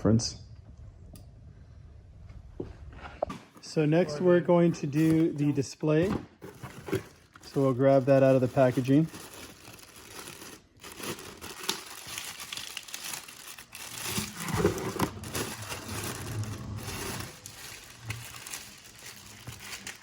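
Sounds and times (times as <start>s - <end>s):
plastic packaging crinkling: 4.8s - 20.0s
plastic tearing: 4.8s - 20.0s.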